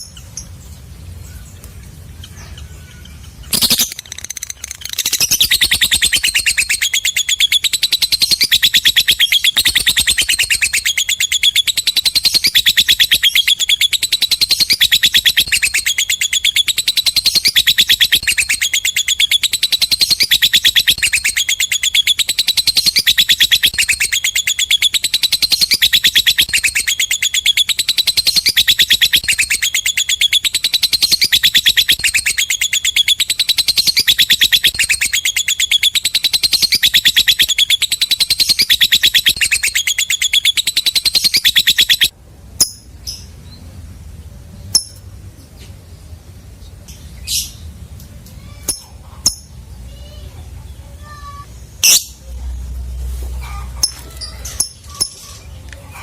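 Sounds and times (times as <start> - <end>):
lovebird chattering trill: 2.0 - 43.3, 51.0 - 52.5.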